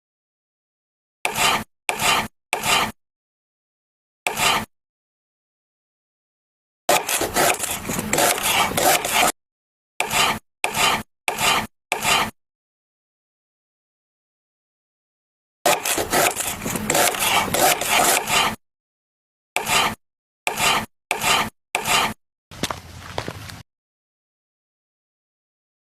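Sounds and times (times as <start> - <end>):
items rubbing and scraping in fridge: 6.9 - 9.4, 15.7 - 18.6.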